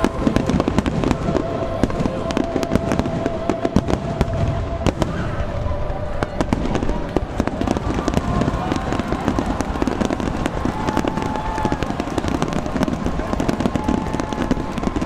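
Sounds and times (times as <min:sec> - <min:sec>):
fireworks bursting and crackling: 0:00.0 - 0:15.0.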